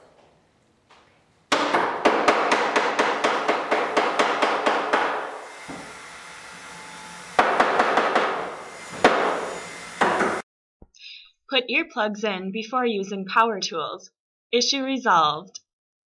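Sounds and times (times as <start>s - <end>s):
rapid hammer blows: 1.5s - 6.0s, 7.3s - 10.4s.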